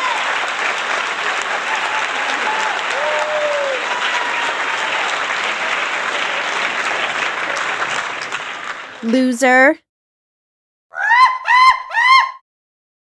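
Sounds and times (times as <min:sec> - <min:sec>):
crowd clapping: 0:00.0 - 0:09.8.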